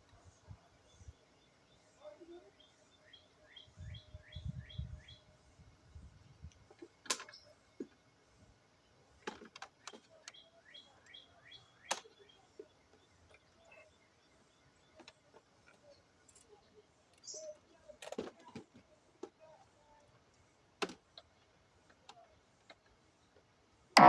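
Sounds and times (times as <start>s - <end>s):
small bird chirping: 0.3s - 5.4s, 6.0s - 8.1s, 9.7s - 18.0s.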